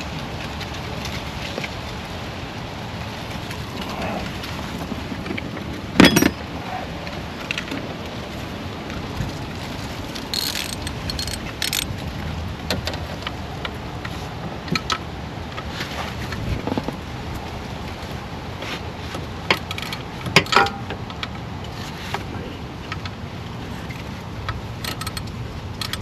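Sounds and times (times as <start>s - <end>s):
metallic clicks of hand tools: 10.3s - 11.9s, 24.8s - 26.0s.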